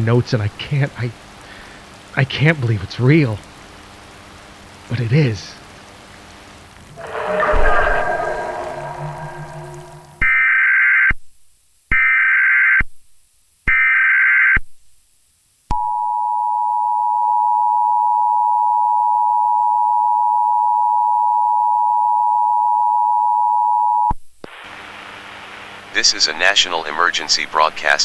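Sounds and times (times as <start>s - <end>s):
high two-pitch data screech: 7.0s - 10.3s.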